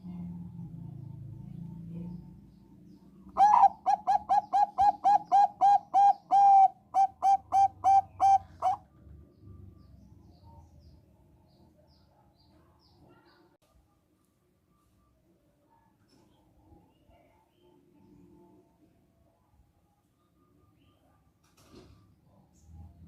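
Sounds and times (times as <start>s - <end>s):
dove cooing: 3.3s - 8.8s.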